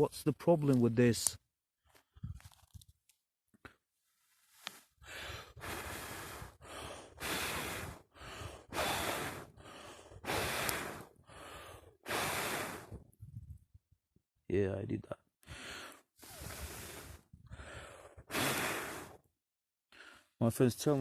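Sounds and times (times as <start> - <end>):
person blowing on campfire: 4.7 - 13.1, 16.2 - 19.3.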